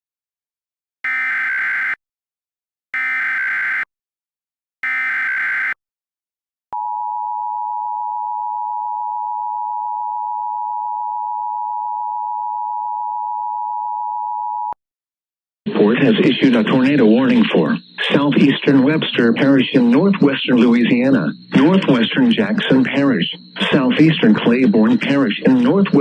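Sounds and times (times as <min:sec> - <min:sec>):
warbling digital data bursts: 0:16.0 - 0:26.0.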